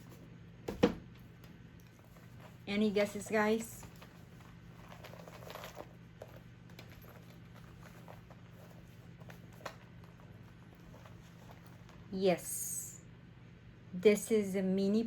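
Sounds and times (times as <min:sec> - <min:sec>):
steady low hum: 0:00.0 - 0:15.0
faint rustling: 0:01.2 - 0:12.2.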